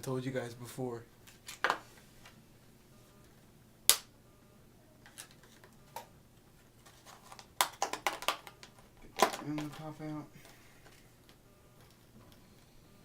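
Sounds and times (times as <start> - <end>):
plastic packaging clicking: 7.2 - 9.9.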